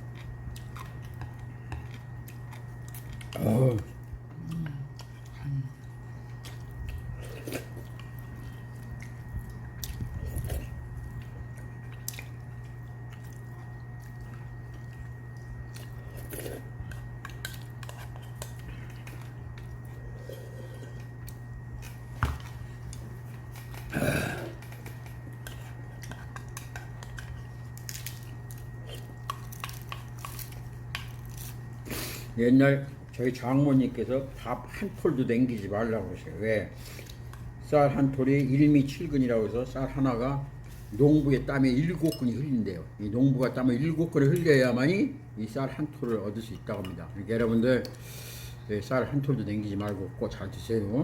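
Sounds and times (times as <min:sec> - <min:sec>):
chewing: 0:00.0 - 0:31.9
steady low hum: 0:00.0 - 0:51.0.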